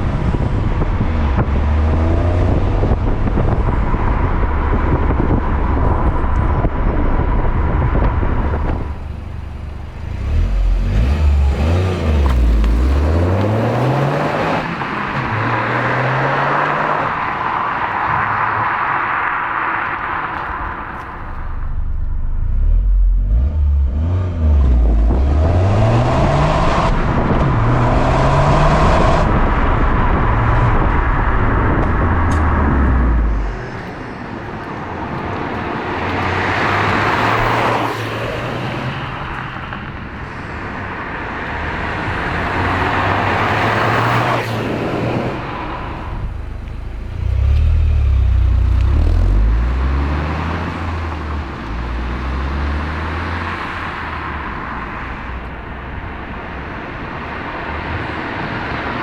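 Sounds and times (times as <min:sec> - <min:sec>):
car engine revving: 0:00.0 - 0:59.0.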